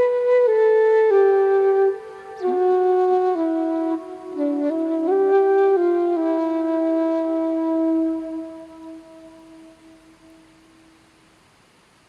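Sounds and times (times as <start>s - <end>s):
slow flute melody: 0.0s - 11.1s.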